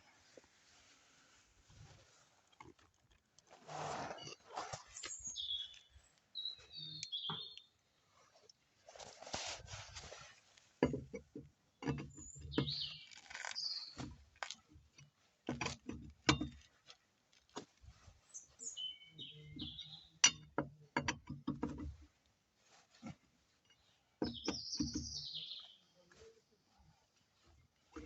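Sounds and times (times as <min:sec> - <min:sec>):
small birds chirping: 0:04.8 - 0:08.6, 0:11.6 - 0:14.1, 0:18.1 - 0:20.6, 0:23.7 - 0:28.0
sharp clicks and knocks: 0:10.8 - 0:12.8, 0:20.2 - 0:22.0.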